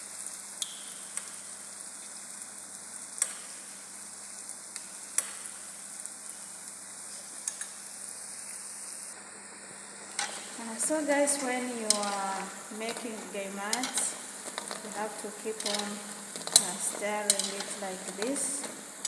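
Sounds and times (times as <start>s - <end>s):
dough deep-frying in oil: 0.0s - 19.0s.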